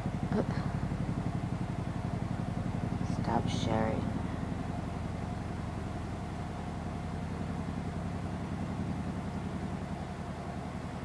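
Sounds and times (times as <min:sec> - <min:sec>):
low mechanical hum: 0:00.0 - 0:11.0.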